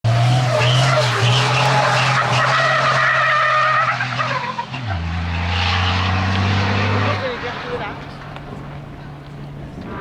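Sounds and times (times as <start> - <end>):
racing car engine: 0.0 - 10.0
tyres squealing: 0.4 - 6.2.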